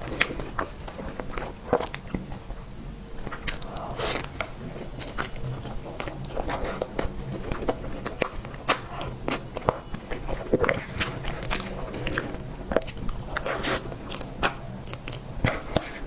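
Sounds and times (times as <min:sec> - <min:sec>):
wet mouth chewing sounds: 0:03.2 - 0:16.0.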